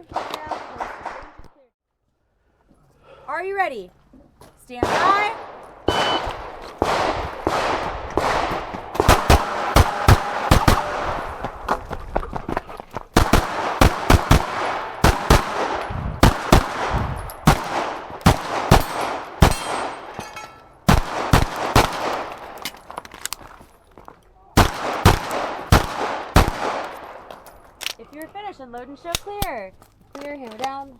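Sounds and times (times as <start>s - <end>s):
pistol shots: 4.8s - 11.4s, 13.2s - 22.8s, 24.6s - 27.4s
shot timer beep: 5.9s - 6.4s.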